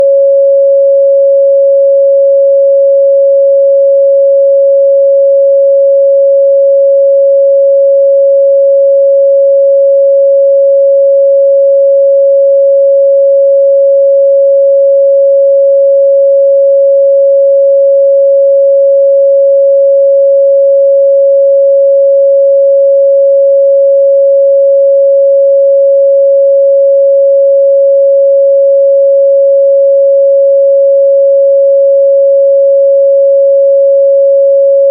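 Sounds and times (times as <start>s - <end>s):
sine-wave test tone: 0.0s - 34.9s.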